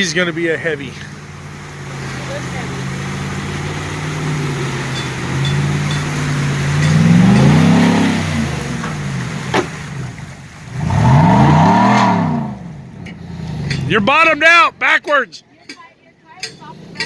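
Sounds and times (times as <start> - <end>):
engine revving: 0.0 - 15.1.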